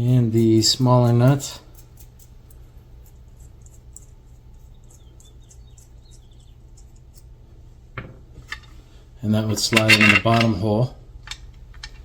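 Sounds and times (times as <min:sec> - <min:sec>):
steady low hum: 0:00.0 - 0:12.0
nut unscrewing ticks and squeaks: 0:00.1 - 0:07.3.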